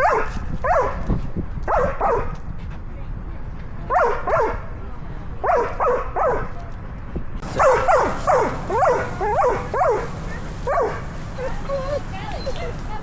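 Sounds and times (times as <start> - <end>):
dog yipping: 0.0 - 1.0, 1.7 - 2.3, 7.4 - 12.8.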